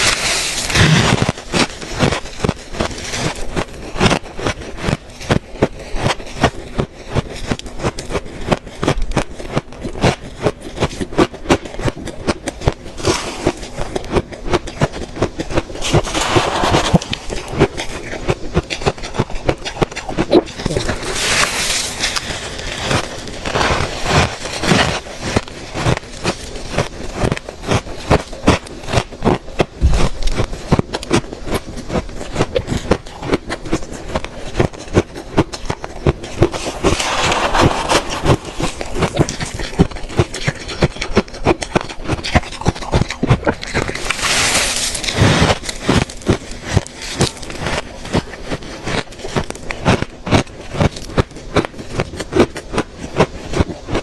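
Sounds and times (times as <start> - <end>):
ice scraping: 0.0 - 51.2
ice being crunched: 0.0 - 54.0.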